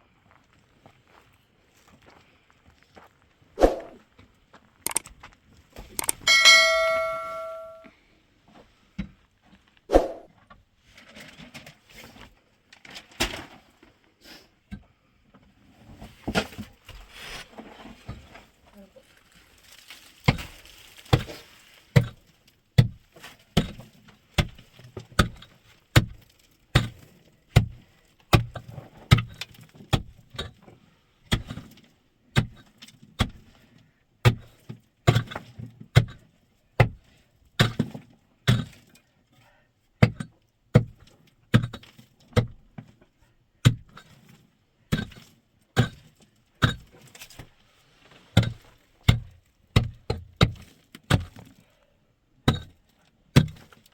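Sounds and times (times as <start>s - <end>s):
hand tool striking: 6.0s - 7.9s.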